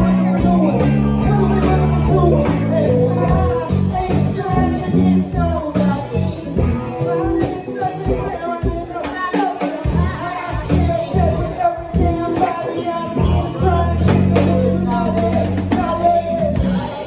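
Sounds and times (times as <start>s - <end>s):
band playing rock-blues: 0.0s - 17.0s
person singing: 0.0s - 17.0s.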